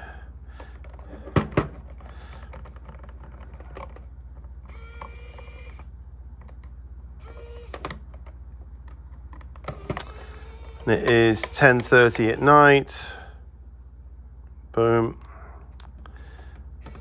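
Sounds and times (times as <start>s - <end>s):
steady low hum: 0.0s - 17.0s
short buzzing tones: 4.6s - 5.9s, 7.2s - 8.2s, 9.6s - 13.2s
battery pack plastic clicks: 8.9s - 12.6s.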